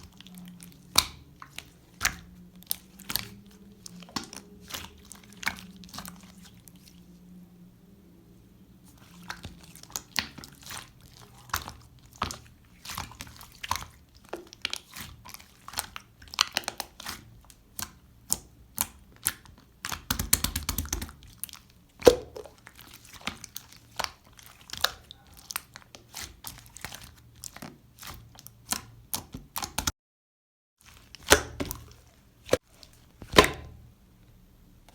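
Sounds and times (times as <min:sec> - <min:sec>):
slime squished by hand popping: 0:22.0 - 0:22.6.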